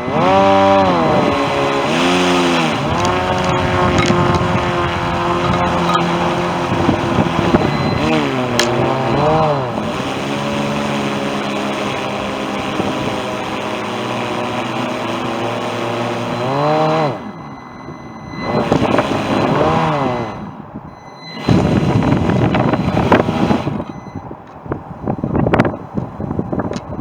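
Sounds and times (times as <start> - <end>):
wind noise: 0.0 - 10.8, 17.2 - 27.0
rover motor running: 0.0 - 24.1.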